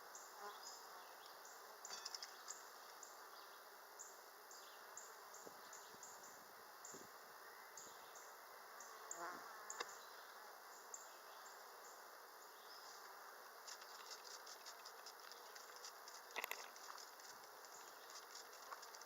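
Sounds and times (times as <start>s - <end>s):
honeybees humming: 11.3s - 19.0s.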